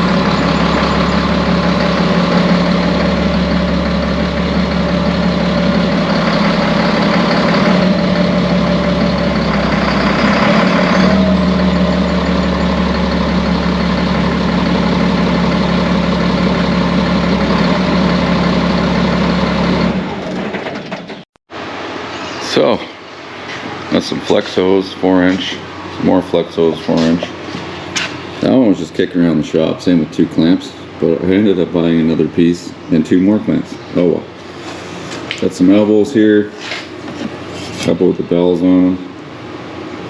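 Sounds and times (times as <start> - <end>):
turbocharged engine running: 0.0 - 20.6.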